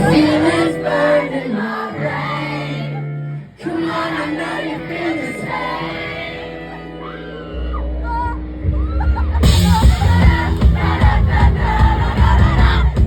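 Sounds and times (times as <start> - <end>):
person singing: 0.0 - 3.0
live band playing: 8.1 - 13.0.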